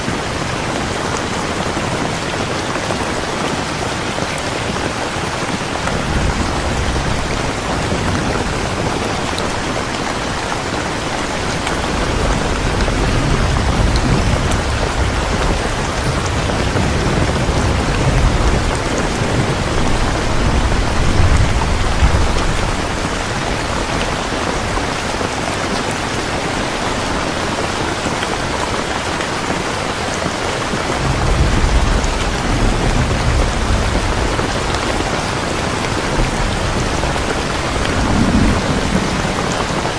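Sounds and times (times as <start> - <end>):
heavy rain: 0.0 - 39.9
rolling thunder: 5.5 - 25.3, 31.0 - 39.9.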